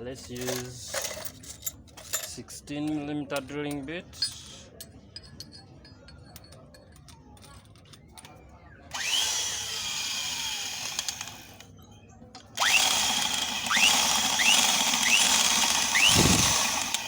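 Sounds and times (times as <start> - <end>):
electric drill whining: 8.9 - 11.6, 12.6 - 17.0.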